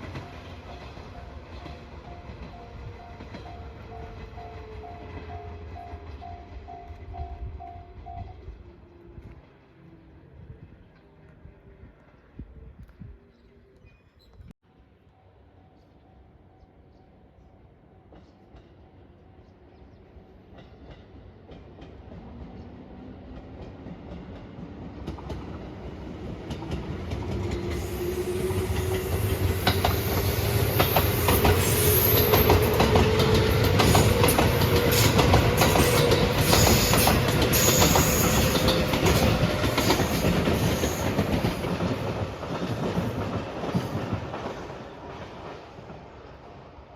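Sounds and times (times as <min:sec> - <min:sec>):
rising tone of passing train: 0:00.0 - 0:14.0, 0:14.7 - 0:46.9
train wheels clattering over rails: 0:23.3 - 0:46.2.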